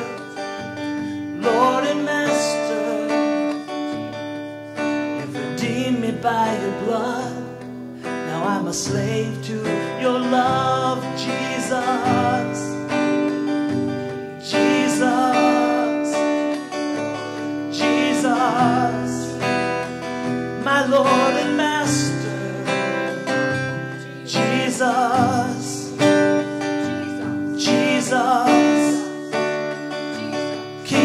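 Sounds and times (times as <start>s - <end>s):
person singing with vibrato: 0.0s - 31.0s
strummed acoustic guitar: 0.0s - 31.0s.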